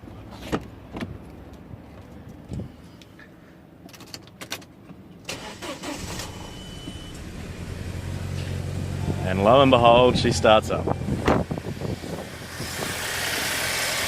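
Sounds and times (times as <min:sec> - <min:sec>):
car engine cranking and starting: 0:05.2 - 0:14.0.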